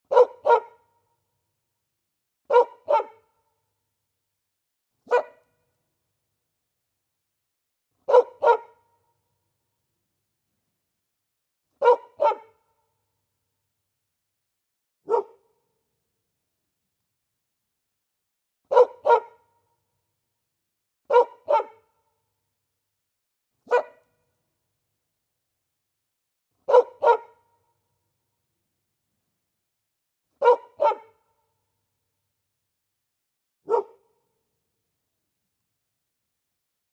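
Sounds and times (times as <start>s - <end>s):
dog barking: 0.1s - 0.9s, 2.5s - 3.4s, 5.0s - 5.5s, 8.0s - 8.9s, 11.8s - 12.7s, 15.0s - 15.5s, 18.7s - 19.5s, 21.1s - 21.9s, 23.6s - 24.1s, 26.6s - 27.6s, 30.4s - 31.3s, 33.6s - 34.2s.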